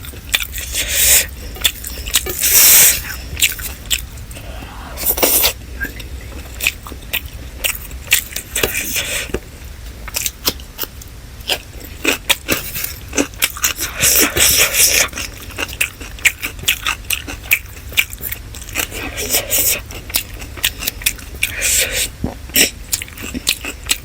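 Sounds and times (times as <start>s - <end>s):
chewing and mouth smacking: 0.0s - 24.0s.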